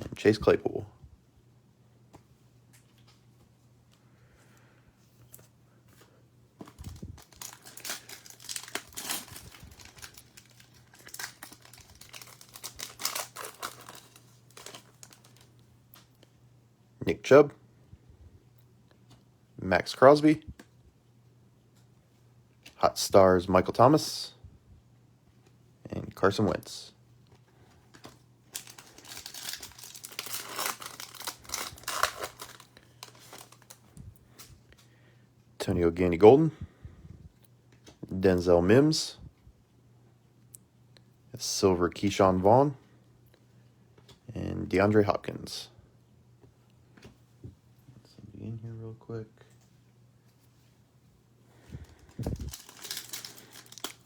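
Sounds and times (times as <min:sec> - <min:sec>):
foil wrapper tearing and crinkling: 0:06.7 - 0:15.5, 0:28.5 - 0:33.8, 0:51.8 - 0:54.0.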